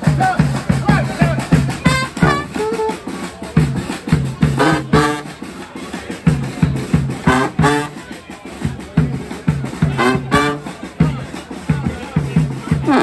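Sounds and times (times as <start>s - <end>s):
brass horn phrases: 0.0s - 3.7s, 4.3s - 5.6s, 6.8s - 8.2s, 9.6s - 10.9s, 12.7s - 13.0s
drum beat: 0.0s - 13.0s.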